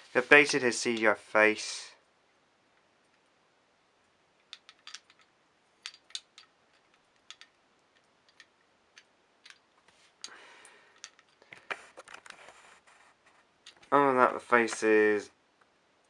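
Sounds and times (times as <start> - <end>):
wooden toy clicks and taps: 4.5 - 9.6
soft rustle: 9.8 - 10.3, 11.2 - 15.2.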